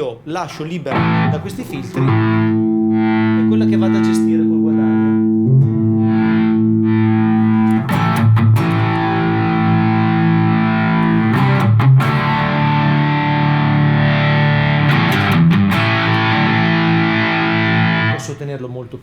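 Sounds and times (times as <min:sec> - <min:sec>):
distorted electric guitar chords: 0:00.9 - 0:18.4.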